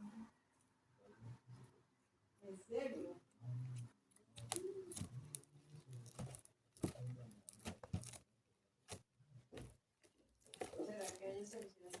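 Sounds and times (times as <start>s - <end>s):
crinkling crackles: 4.4s - 8.3s, 9.6s - 12.0s.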